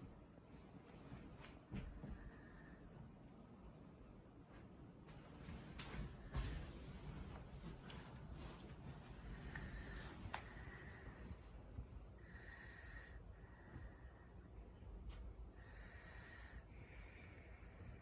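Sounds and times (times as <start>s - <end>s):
person snoring with high hiss: 1.9s - 3.6s, 9.1s - 11.2s, 12.2s - 14.5s, 15.6s - 18.0s.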